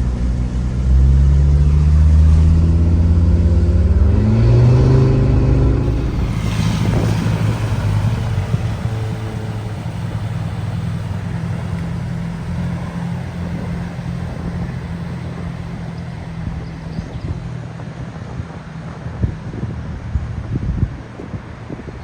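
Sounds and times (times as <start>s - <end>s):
vehicle engine humming: 0.0s - 20.4s
rushing noise: 5.0s - 19.2s.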